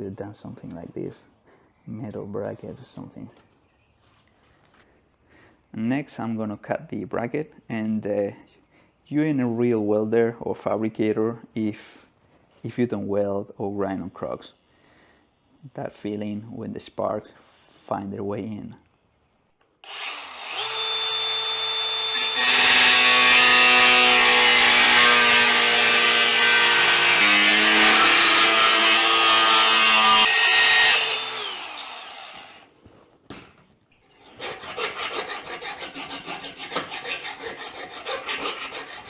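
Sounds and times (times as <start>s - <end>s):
angle grinder cutting steel: 19.8s - 32.7s
filing metal: 22.1s - 32.4s, 34.1s - 39.0s.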